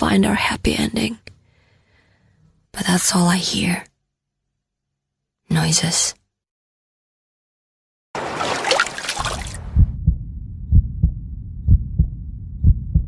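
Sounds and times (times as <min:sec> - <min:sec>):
heartbeat thumps: 0:09.6 - 0:13.0
low rumble: 0:09.6 - 0:13.0.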